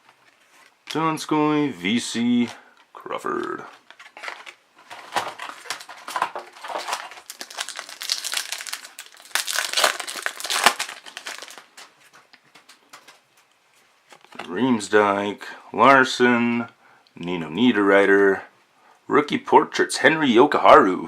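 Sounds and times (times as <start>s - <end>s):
plastic wrapper crinkling: 3.2s - 14.4s.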